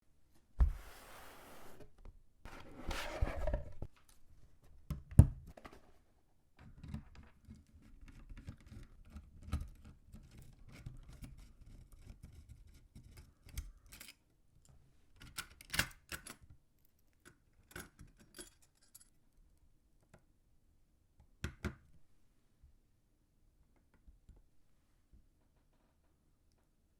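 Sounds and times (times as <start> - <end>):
scratchy rustling and scraping: 0.6 - 3.9.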